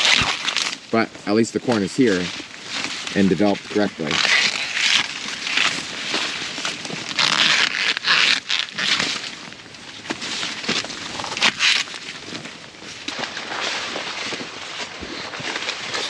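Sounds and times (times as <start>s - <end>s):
corn ears snapping off: 0.0s - 0.8s, 1.6s - 9.3s
dry corn stalks rustling: 0.0s - 16.0s.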